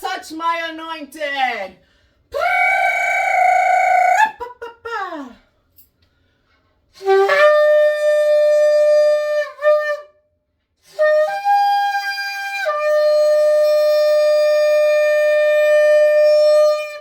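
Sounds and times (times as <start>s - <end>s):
shofar blasts: 7.0s - 10.2s, 10.9s - 17.0s.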